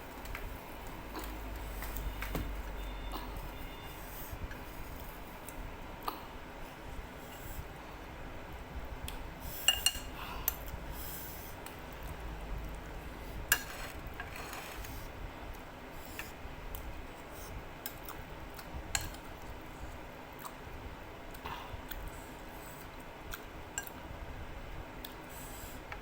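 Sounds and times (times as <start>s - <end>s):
electric fan humming: 0.0s - 26.0s
cutlery clinking against a bowl: 9.6s - 10.6s, 13.5s - 14.9s, 18.9s - 19.3s.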